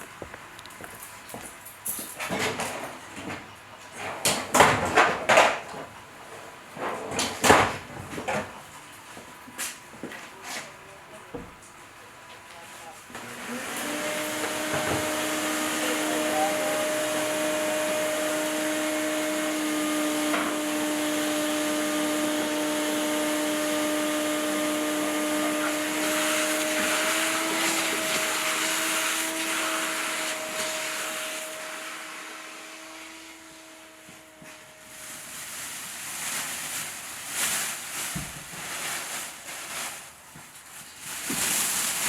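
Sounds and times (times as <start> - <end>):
grinder whining: 13.2 - 35.0.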